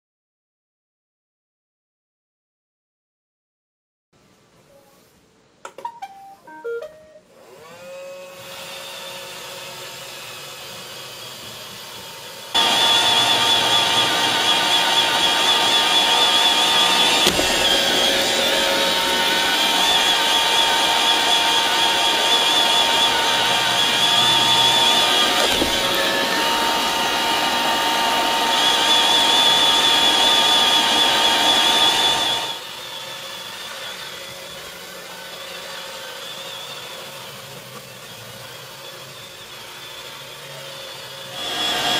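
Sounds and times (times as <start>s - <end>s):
robot vacuum running: 7.4s - 41.9s.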